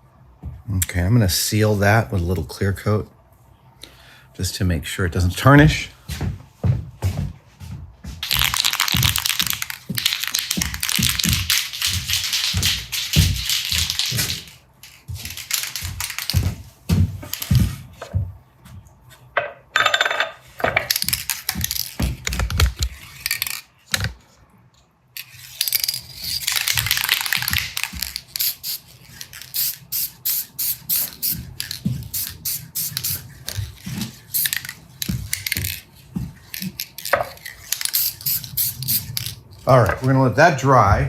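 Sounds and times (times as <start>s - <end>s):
small metal parts clinking: 13.4s - 16.5s, 19.8s - 22.0s, 23.1s - 23.7s, 25.2s - 30.0s, 32.9s - 39.4s
aerosol can spraying: 25.7s - 39.4s.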